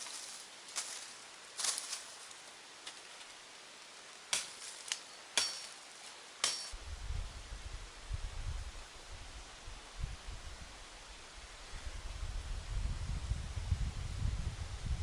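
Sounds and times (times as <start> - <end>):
hand tool striking: 4.3 - 6.8.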